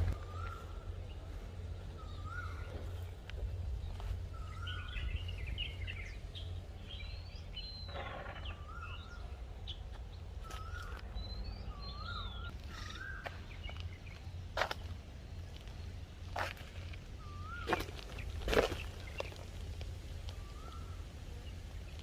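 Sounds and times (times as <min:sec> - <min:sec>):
small birds chirping: 0:00.0 - 0:22.0
steady low rumble: 0:00.0 - 0:22.0.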